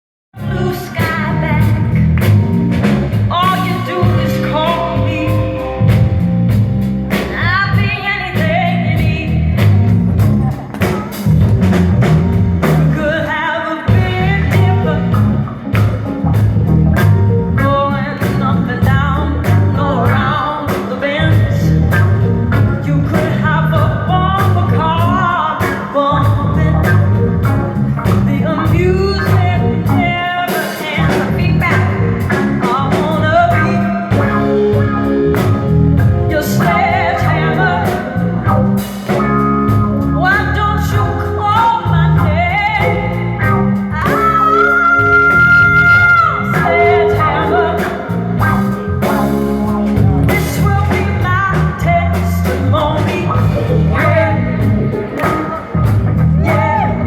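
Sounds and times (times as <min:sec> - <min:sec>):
woman singing: 0:00.4 - 0:02.0, 0:03.3 - 0:05.9, 0:07.2 - 0:09.8, 0:12.6 - 0:15.4, 0:17.6 - 0:21.9, 0:22.6 - 0:27.0, 0:28.3 - 0:34.3, 0:36.3 - 0:38.4, 0:40.2 - 0:48.2, 0:50.2 - 0:54.8, 0:56.4 - 0:57.0
live band playing funky rock: 0:00.4 - 0:57.0.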